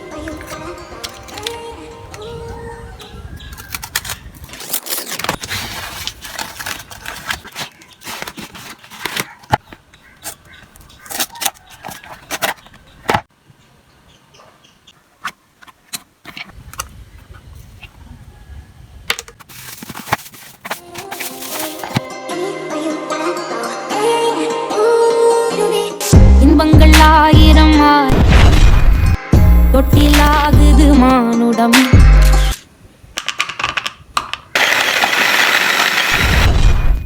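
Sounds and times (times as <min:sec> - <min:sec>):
crackly rustling: 0:00.2 - 0:13.3, 0:19.2 - 0:22.0
packaging being handled: 0:03.4 - 0:13.3, 0:19.4 - 0:22.1.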